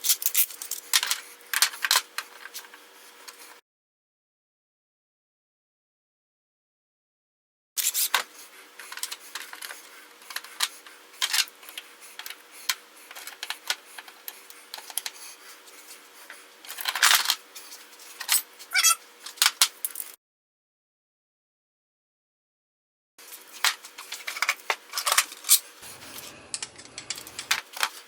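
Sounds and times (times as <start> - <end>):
short falling squeak: 18.7 - 19.0
faint steady hum: 23.2 - 28.0.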